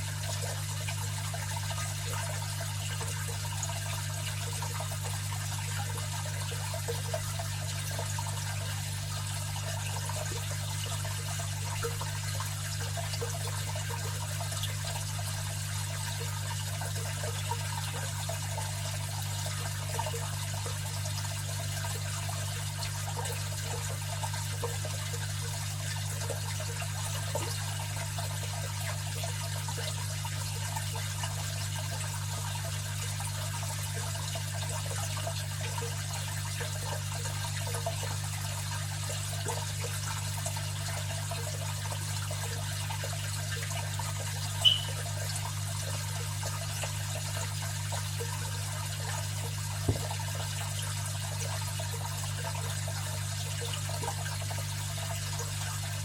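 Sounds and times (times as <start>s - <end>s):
pump humming: 0.0s - 56.0s
water trickling and splashing: 0.0s - 56.0s
short high ping: 44.6s - 45.0s.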